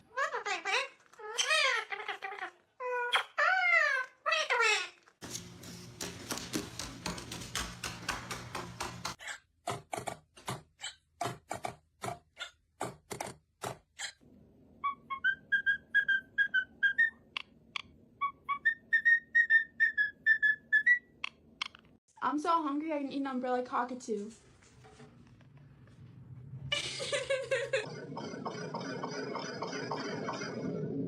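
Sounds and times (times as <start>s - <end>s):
clicks and taps: 6.0s - 10.6s
parrot whistling: 14.8s - 17.4s, 18.2s - 21.1s.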